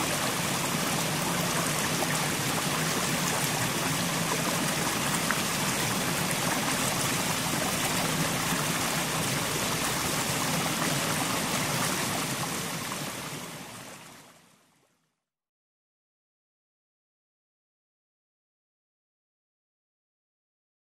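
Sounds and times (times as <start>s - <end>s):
water rushing over rocks: 0.0s - 14.2s.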